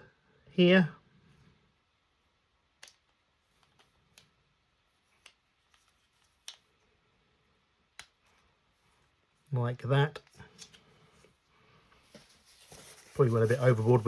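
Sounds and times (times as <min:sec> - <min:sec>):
plastic parts clicking and tapping: 0:02.7 - 0:04.4.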